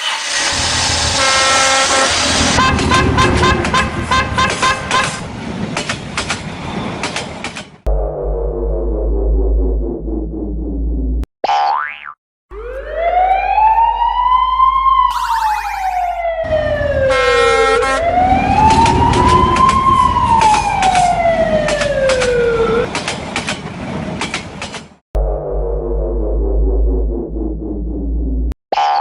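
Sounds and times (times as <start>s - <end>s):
emergency vehicle siren wailing: 12.5s - 22.9s.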